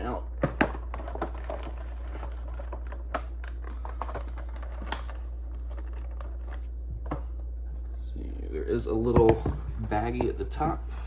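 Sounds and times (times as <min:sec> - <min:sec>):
cardboard and plastic rustling: 0:00.4 - 0:11.0.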